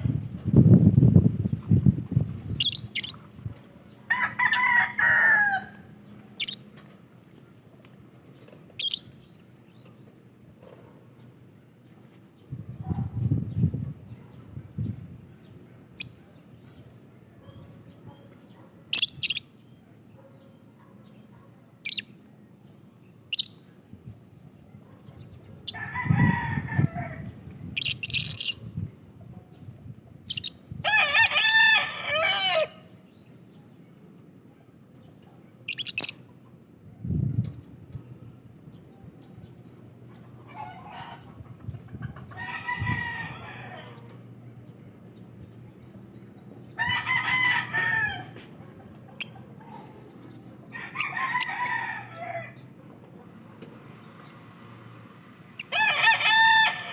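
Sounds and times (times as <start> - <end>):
lovebirds chirping: 2.5 - 4.6.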